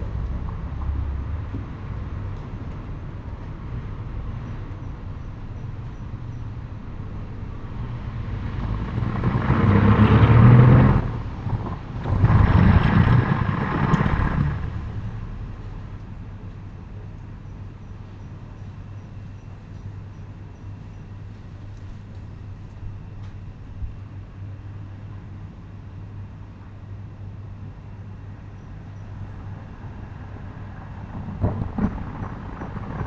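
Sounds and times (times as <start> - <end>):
vehicles passing by: 0.0 - 18.5, 28.7 - 33.0.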